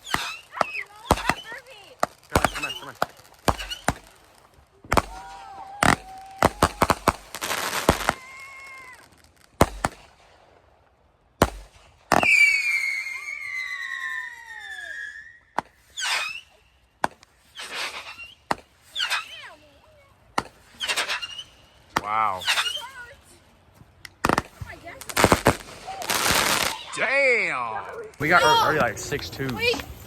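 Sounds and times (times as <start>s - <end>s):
fireworks bangs and crackles: 0.0s - 23.4s, 24.1s - 30.0s
firework whistle falling in pitch: 12.2s - 16.5s.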